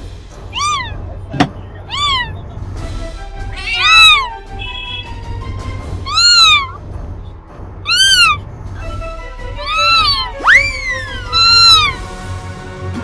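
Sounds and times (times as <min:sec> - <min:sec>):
faint background music: 0:00.0 - 0:13.0
cat meowing: 0:00.4 - 0:02.4, 0:03.4 - 0:04.8, 0:06.0 - 0:06.8, 0:07.9 - 0:08.4, 0:09.6 - 0:12.0.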